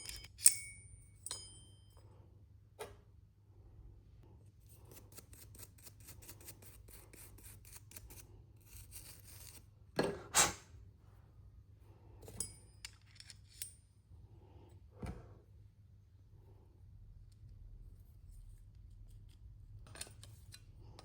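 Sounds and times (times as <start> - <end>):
light metallic clinks: 0.0 - 2.0, 12.2 - 13.8.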